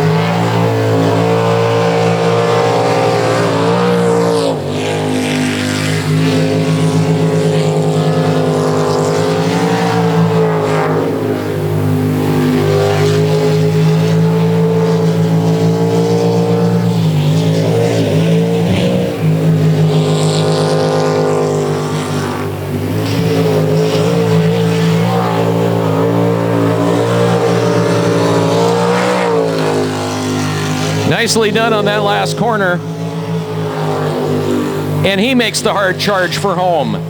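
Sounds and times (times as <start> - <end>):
boat engine at high revs: 0.0 - 37.0.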